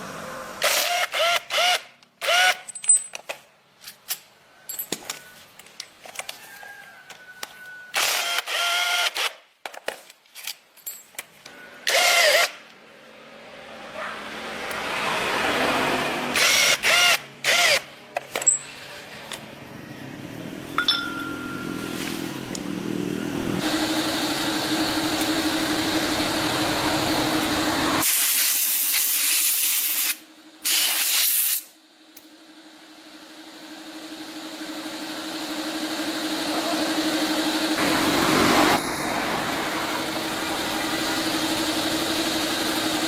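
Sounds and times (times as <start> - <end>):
power tool bursts: 0.6 - 2.7, 7.9 - 9.4, 11.8 - 12.6, 16.3 - 17.9.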